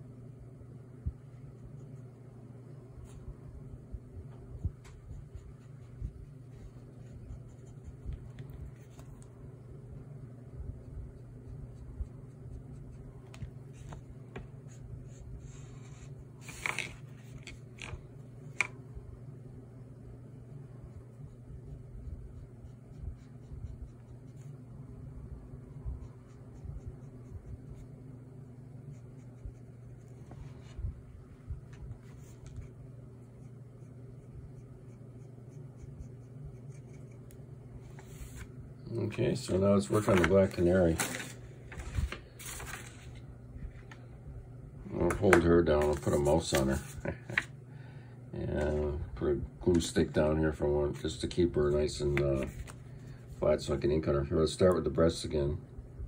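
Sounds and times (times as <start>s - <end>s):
steady low hum: 0.0s - 56.0s
pen scratching on paper: 33.3s - 37.3s.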